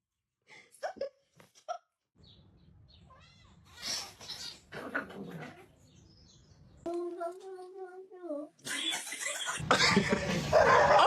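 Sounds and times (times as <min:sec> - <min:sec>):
cat meowing: 0:03.0 - 0:04.6.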